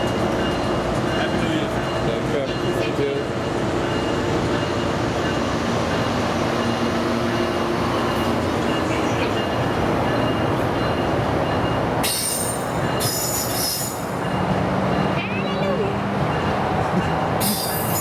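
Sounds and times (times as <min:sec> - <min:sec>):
train rumbling past: 0:00.0 - 0:18.0
high hiss and squeal: 0:12.0 - 0:14.0.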